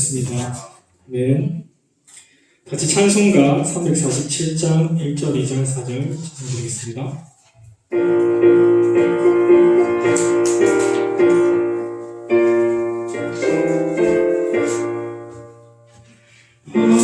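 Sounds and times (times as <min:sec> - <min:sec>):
piano chords: 0:02.8 - 0:05.5, 0:07.9 - 0:17.0.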